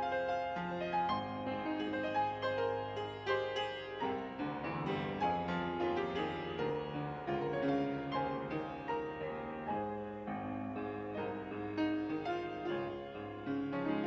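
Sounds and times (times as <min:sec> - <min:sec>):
slow piano melody: 0:00.0 - 0:14.0.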